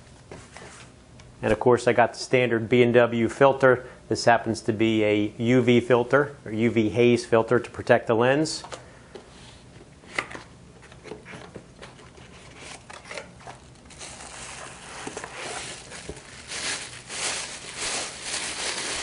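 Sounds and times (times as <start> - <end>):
packaging crinkling and rustling: 10.4 - 19.0.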